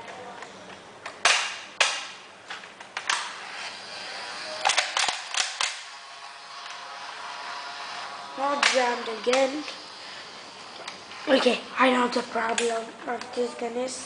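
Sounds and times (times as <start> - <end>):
dart blaster firing snaps: 1.2 - 2.2.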